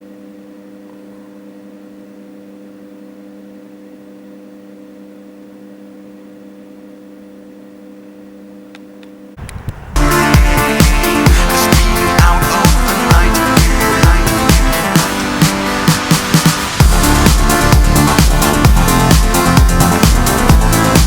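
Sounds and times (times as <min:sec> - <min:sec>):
steady hum of constant tones: 0:04.6 - 0:21.0.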